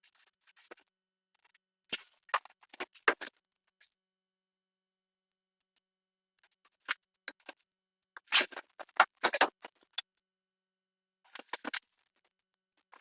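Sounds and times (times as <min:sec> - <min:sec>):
pipe fittings scraping and clicking: 0:06.4 - 0:07.6, 0:08.2 - 0:10.1, 0:11.3 - 0:13.0.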